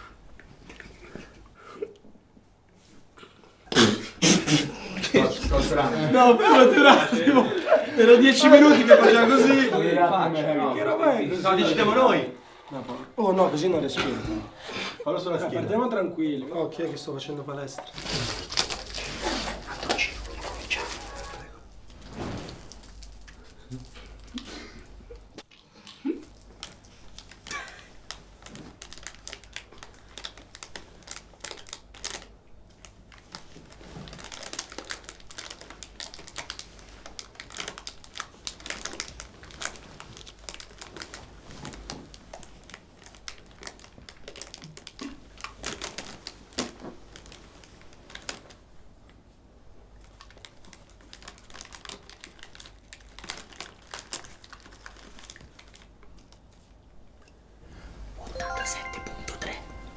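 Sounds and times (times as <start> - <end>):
chip bag crinkling: 17.9 - 25.3, 26.3 - 48.6, 50.0 - 56.4.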